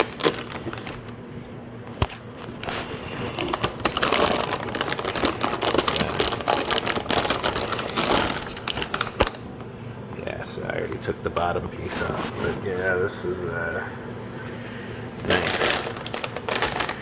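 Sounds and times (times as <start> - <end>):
packaging rustling: 0.0 - 1.2, 1.9 - 9.4, 15.2 - 17.0.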